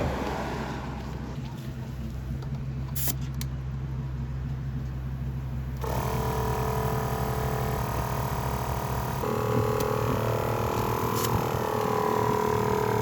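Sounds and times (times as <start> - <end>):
engine idling: 0.0 - 13.0
high multi-tone whine: 7.4 - 13.0.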